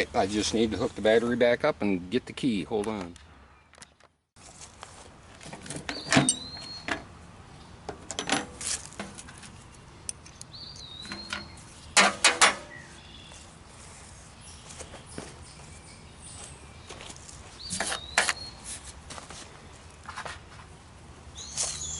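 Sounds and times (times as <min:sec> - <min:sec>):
tools and parts clinking: 0:05.4 - 0:07.0, 0:07.9 - 0:12.7
bird chirping: 0:05.8 - 0:07.8, 0:09.7 - 0:18.8, 0:21.3 - 0:21.9.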